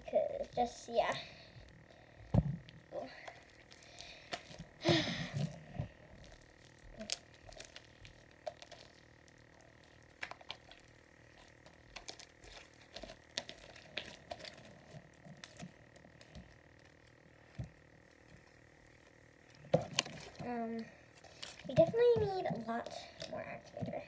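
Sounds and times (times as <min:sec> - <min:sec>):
slime squelching and clicking: 0:06.2 - 0:24.0.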